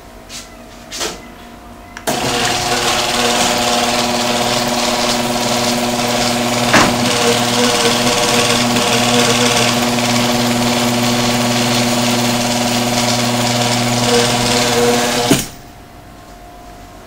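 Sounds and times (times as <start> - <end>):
motor stopping clunk: 2.0 - 15.7
garage door opener motor humming: 2.0 - 16.1.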